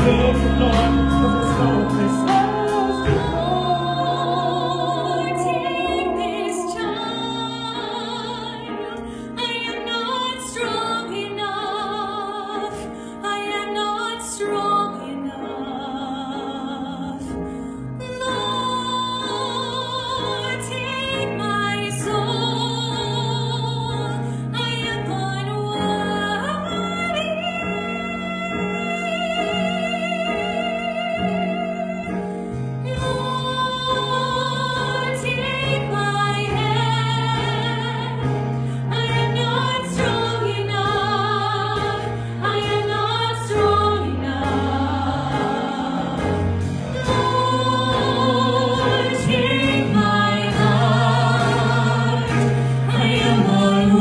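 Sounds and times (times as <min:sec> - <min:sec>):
person singing with vibrato: 0:00.0 - 0:09.8, 0:32.9 - 0:54.0
sustained musical accompaniment: 0:00.0 - 0:54.0.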